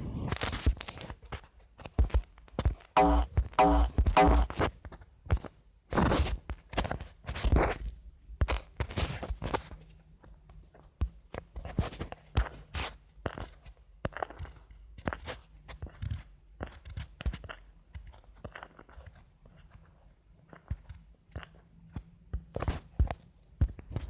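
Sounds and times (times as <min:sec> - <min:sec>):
knocks and taps: 0:03.0 - 0:04.5.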